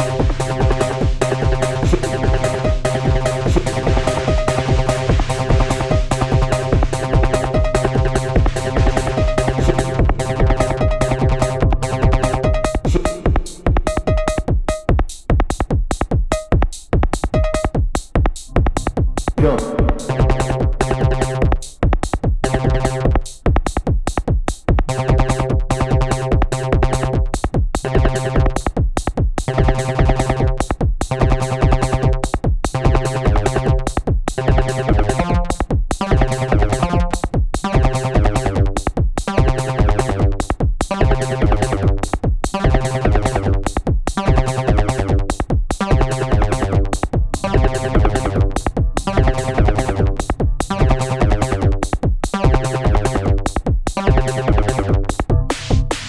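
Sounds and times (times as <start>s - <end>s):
deep synth bass line: 0.0s - 14.9s, 18.5s - 23.4s, 24.9s - 27.3s, 27.9s - 28.6s, 29.5s - 30.6s, 31.2s - 38.8s, 39.4s - 56.0s
synth tones: 0.0s - 14.9s, 18.5s - 21.8s, 45.9s - 51.7s
drum machine beat: 0.0s - 56.0s.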